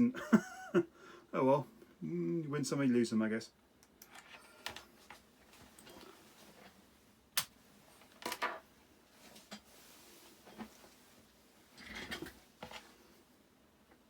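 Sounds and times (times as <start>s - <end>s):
faint rustling: 8.8s - 13.3s.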